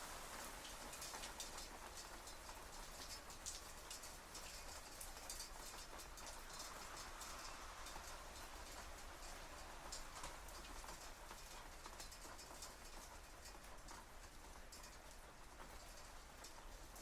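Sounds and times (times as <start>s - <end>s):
faint hiss: 0.0s - 12.4s
hail ticking on metal shutters: 0.1s - 17.0s.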